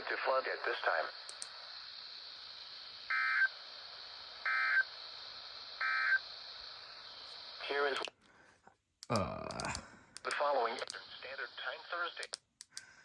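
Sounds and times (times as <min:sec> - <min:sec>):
static hiss: 0:00.0 - 0:08.1, 0:10.2 - 0:12.4.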